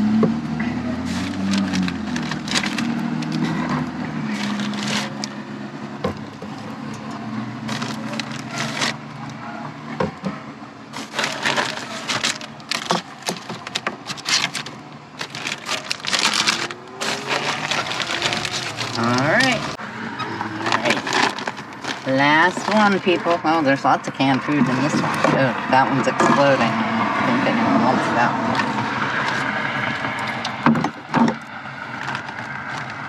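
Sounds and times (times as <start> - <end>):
bags and food packages rustling: 0.8 - 5.4, 7.6 - 9.1, 10.9 - 19.8, 20.4 - 23.4, 31.9 - 33.0.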